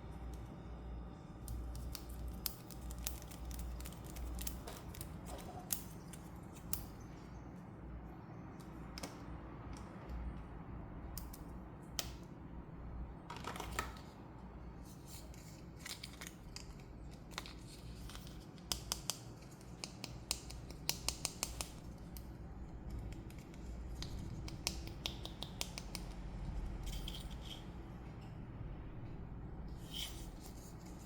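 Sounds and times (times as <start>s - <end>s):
scissors snipping packaging: 1.5s - 6.9s.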